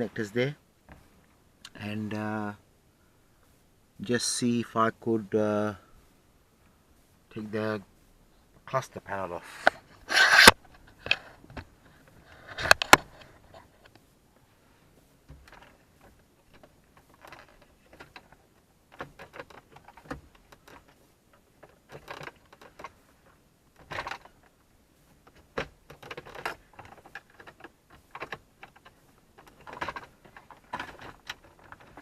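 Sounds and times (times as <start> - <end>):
plastic trim clicks and scrapes: 9.6 - 11.4
plastic creaks: 9.6 - 13.6, 15.3 - 24.6, 25.2 - 32.0.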